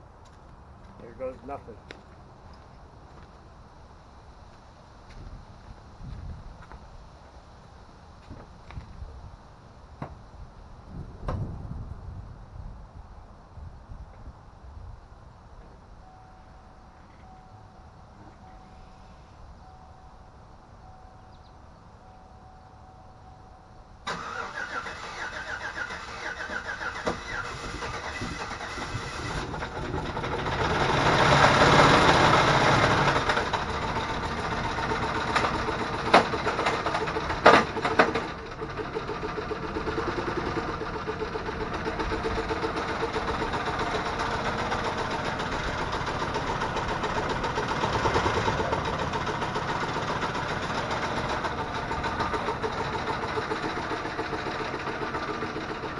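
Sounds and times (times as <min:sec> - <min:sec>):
engine starting and idling: 0:24.0 - 0:55.9.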